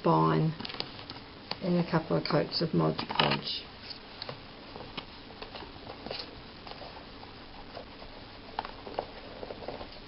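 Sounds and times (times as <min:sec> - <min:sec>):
pages rustling: 0:03.8 - 0:10.0.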